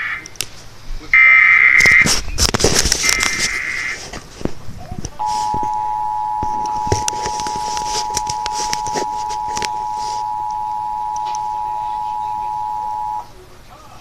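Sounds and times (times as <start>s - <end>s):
clicks and crackle: 1.8s - 5.8s, 6.4s - 11.5s
two-tone alert signal: 5.2s - 13.3s.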